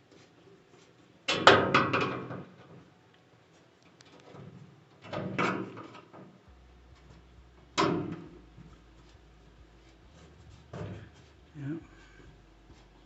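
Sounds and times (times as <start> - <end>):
rattling clunks: 7.0 - 8.8, 10.5 - 11.3.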